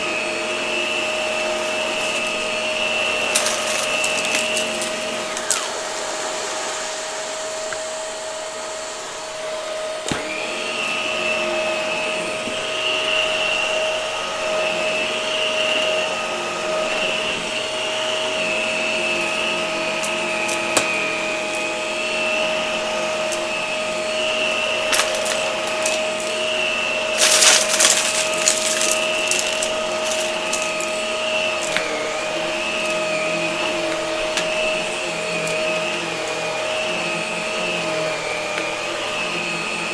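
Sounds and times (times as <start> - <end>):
vacuum cleaner running: 0.0 - 39.9
debris clicking in vacuum: 1.6 - 6.0, 24.6 - 36.3.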